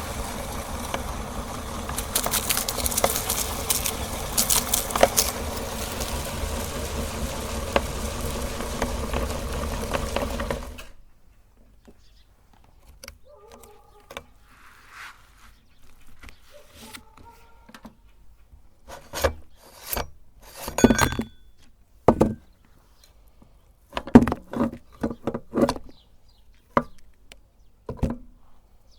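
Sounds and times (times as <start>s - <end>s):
meat grinder motor running: 0.0s - 10.9s.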